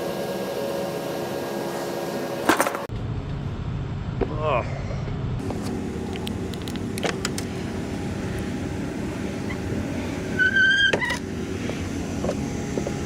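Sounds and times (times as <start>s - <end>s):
road rumble: 1.4s - 13.0s
truck engine running: 5.2s - 13.0s
high squeak: 10.3s - 11.2s.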